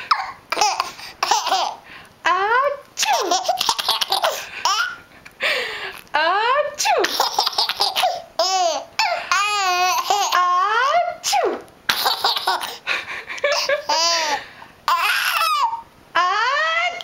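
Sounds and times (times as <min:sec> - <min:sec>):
baby laughing: 0:00.1 - 0:01.8, 0:03.0 - 0:05.0, 0:07.0 - 0:10.5, 0:11.9 - 0:12.8, 0:13.4 - 0:15.8
fake sneeze: 0:11.2 - 0:11.6.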